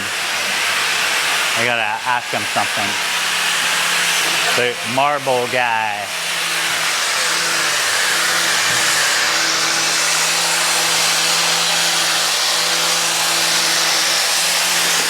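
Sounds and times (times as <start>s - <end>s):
power tool grinding marble: 0.0s - 15.0s.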